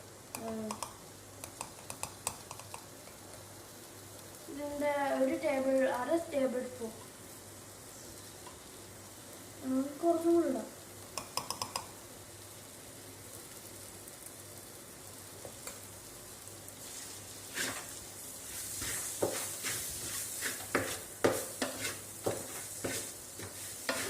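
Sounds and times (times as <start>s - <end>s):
food sizzling in a pan: 0.0s - 24.0s
spoon scraping and knocking pan: 17.5s - 24.0s.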